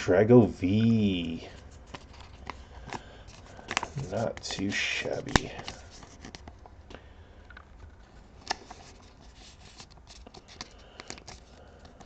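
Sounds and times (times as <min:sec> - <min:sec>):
trading cards rustling: 0:00.4 - 0:12.0
card tapping: 0:01.9 - 0:06.6.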